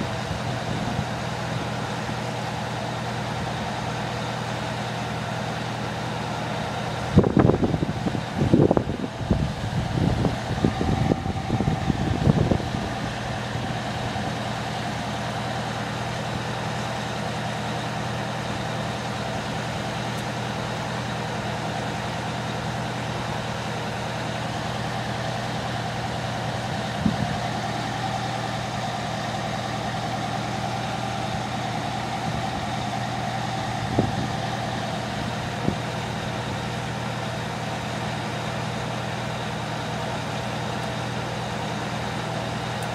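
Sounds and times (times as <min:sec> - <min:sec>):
truck engine idling: 0:00.0 - 0:42.9.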